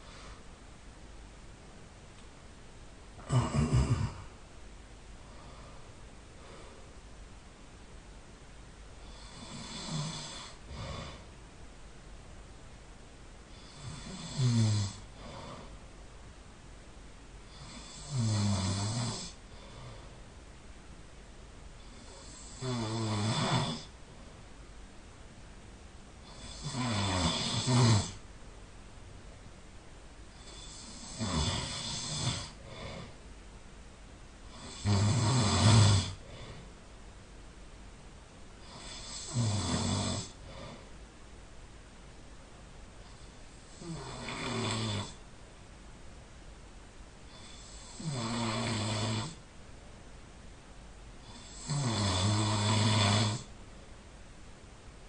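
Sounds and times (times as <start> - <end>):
person snoring: 3.2 - 4.4, 9.0 - 11.3, 13.5 - 15.8, 17.5 - 20.1, 21.8 - 23.9, 26.2 - 28.2, 30.3 - 33.2, 34.5 - 36.7, 38.6 - 40.9, 43.0 - 45.2, 47.3 - 49.4, 51.2 - 53.5.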